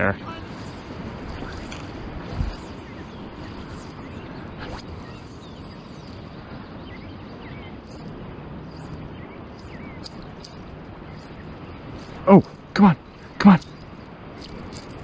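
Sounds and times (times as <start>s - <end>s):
wind: 0.0s - 15.0s
faint bird chirps: 0.2s - 15.0s.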